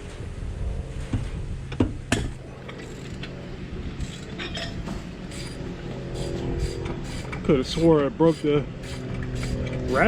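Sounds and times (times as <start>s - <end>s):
ratchet wrench clicking: 2.7s - 3.3s, 4.0s - 4.4s, 5.3s - 10.0s.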